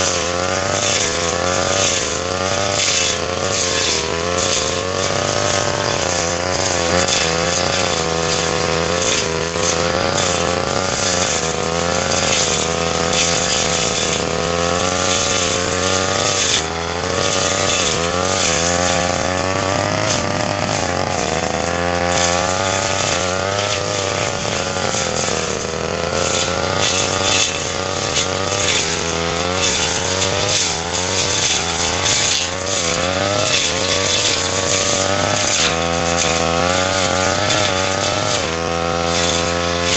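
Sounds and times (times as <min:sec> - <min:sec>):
brush cutter engine running: 0:00.0 - 0:39.9.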